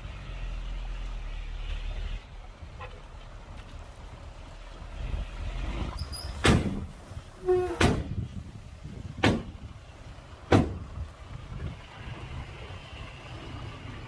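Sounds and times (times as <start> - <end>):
brief squeal: 6.0 - 6.4, 7.4 - 8.0.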